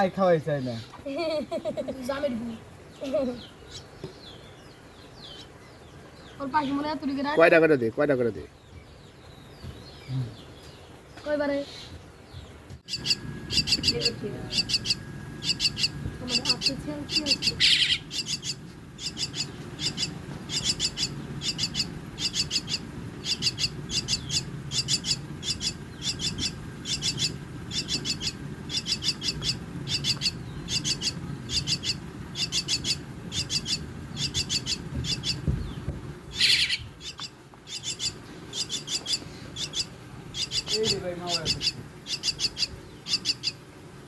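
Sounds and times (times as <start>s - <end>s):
birds rasping chirps: 0.0s - 44.0s.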